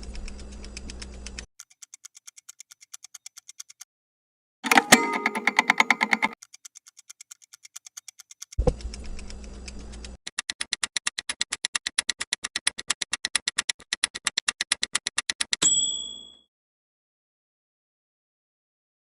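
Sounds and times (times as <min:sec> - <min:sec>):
clock-like ticking: 0:00.0 - 0:03.8, 0:04.7 - 0:15.6.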